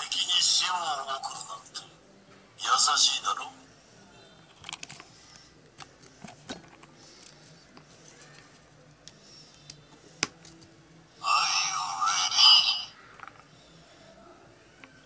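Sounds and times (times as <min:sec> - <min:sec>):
faint plastic clicks and taps: 0:04.5 - 0:10.7.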